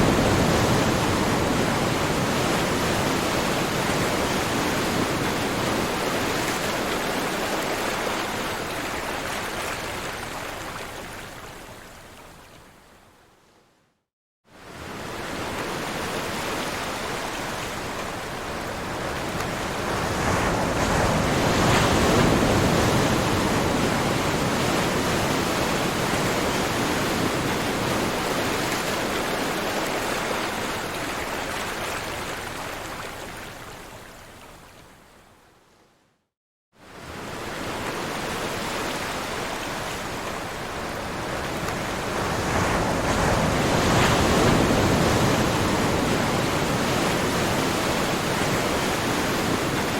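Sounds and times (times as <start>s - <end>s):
waves breaking: 0.0s - 11.6s, 36.9s - 49.9s.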